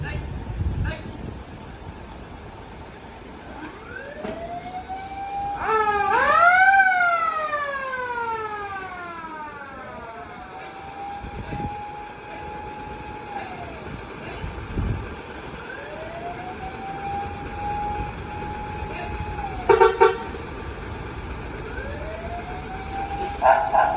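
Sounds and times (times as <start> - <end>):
emergency vehicle sirens wailing: 2.2 - 23.9
mechanical motor siren: 3.5 - 20.3, 21.5 - 23.9.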